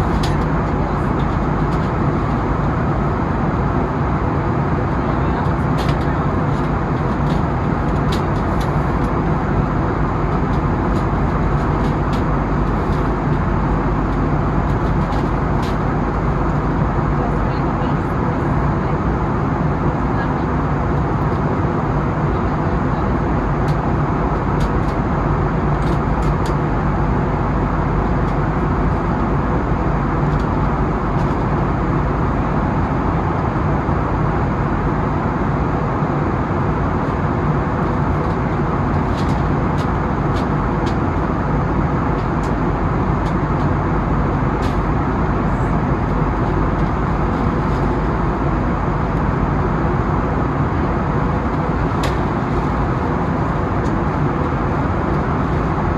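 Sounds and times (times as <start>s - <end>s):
faint steady hum: 0.0s - 19.0s
airliner cabin engine noise: 0.0s - 55.9s.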